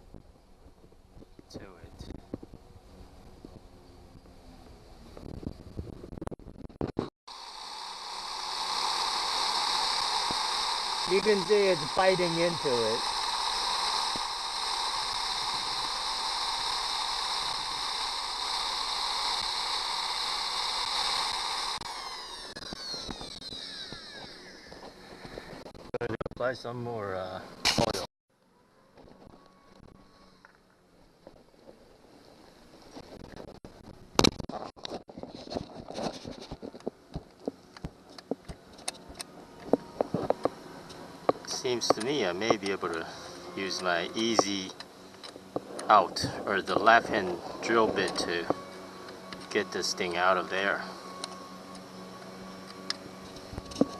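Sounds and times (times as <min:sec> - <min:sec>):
electric drill running: 0:07.3 - 0:25.7, 0:37.4 - 0:53.9.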